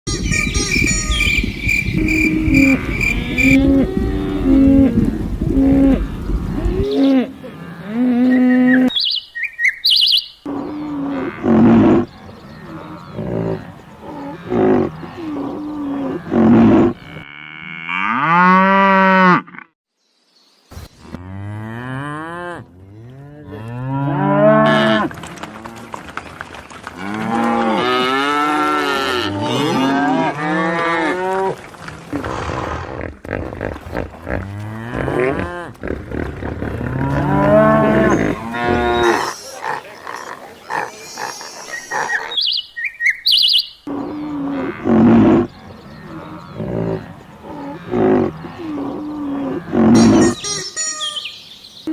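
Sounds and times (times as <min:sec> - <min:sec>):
cattle mooing: 0:21.1 - 0:25.5, 0:27.0 - 0:31.6, 0:34.3 - 0:42.2, 0:43.9 - 0:50.9.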